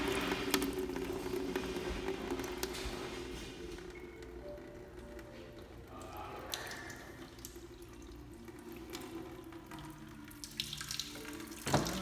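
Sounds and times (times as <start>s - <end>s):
water running and trickling: 0.0s - 12.0s.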